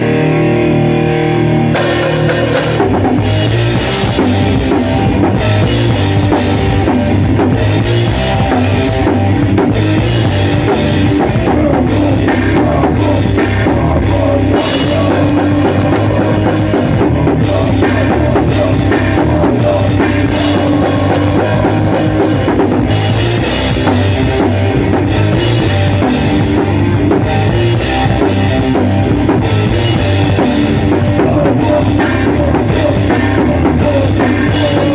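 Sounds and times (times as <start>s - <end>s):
held guitar chord ringing: 0.0s - 4.1s
heavy metal band playing: 0.0s - 34.9s
cymbals and bass drum: 1.8s - 34.9s.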